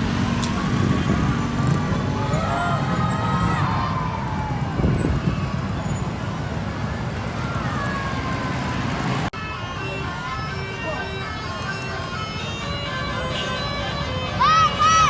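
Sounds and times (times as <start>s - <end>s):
musical air horn gliding tones: 9.4s - 15.0s.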